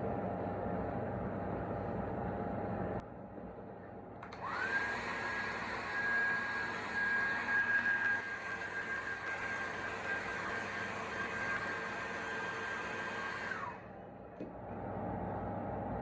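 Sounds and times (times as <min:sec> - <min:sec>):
motor spinning up with whine: 0:04.2 - 0:14.0
small electric motor whirring: 0:04.4 - 0:13.8.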